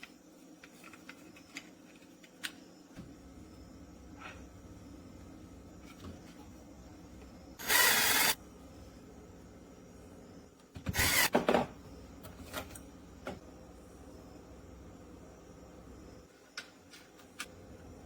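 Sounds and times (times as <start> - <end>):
deadbolt motor whirring: 7.6 - 8.4, 10.9 - 11.3.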